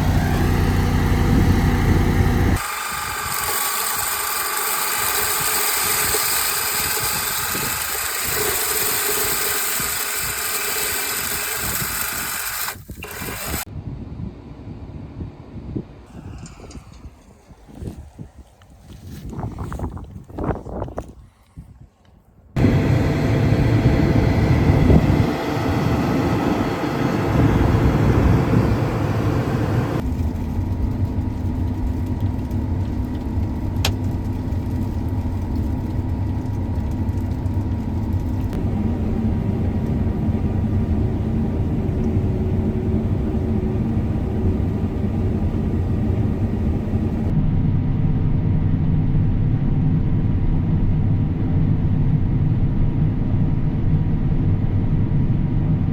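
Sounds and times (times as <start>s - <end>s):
machinery engines rumbling: 0.0s - 3.5s, 22.6s - 47.4s.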